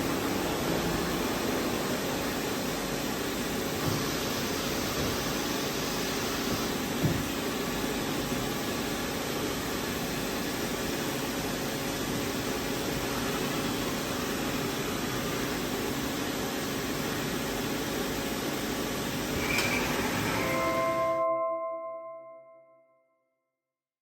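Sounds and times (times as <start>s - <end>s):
machine tool whirring: 19.3s - 20.8s.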